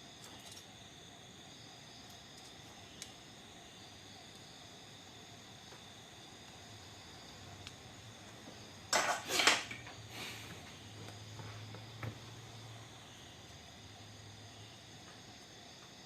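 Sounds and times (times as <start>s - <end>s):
insects chirping: 0.0s - 16.0s
metal tools clattering: 8.9s - 9.9s.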